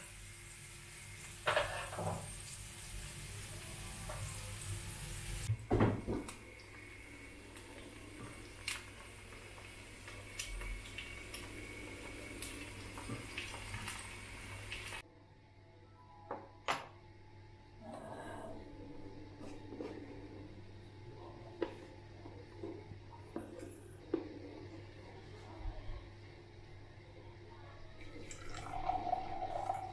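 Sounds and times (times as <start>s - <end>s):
dishes and cutlery clinking: 1.4s - 2.3s.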